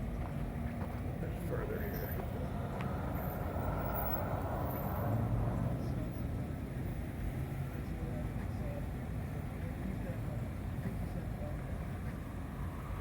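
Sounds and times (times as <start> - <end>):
street traffic noise: 0.0 - 13.0.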